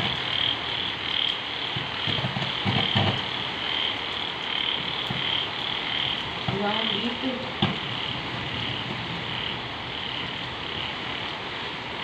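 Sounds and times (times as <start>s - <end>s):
frogs croaking in chorus: 0.0s - 12.0s.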